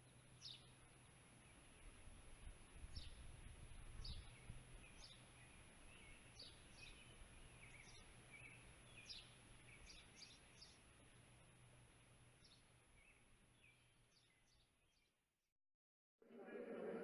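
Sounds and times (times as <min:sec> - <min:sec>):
low steady hum: 0:00.0 - 0:14.4
faint birds chirping: 0:00.0 - 0:15.2.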